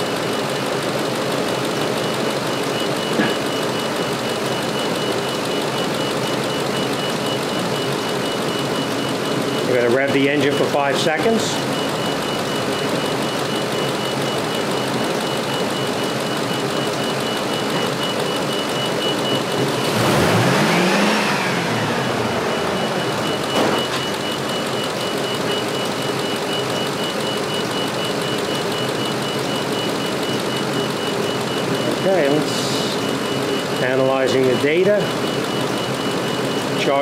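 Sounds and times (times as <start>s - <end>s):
high-pitched beeping: 2.0s - 37.0s
pickup engine idling and revving: 11.6s - 27.0s.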